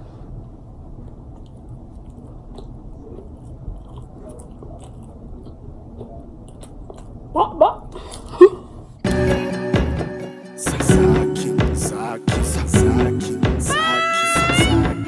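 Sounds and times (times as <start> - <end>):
low steady rumble: 0.0 - 9.0
person chewing food: 0.4 - 7.3.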